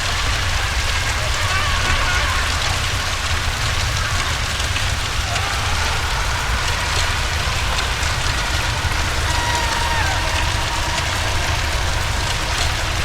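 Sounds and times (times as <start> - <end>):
dense crackling hiss: 0.0 - 13.0
deep low rumble: 5.1 - 13.0.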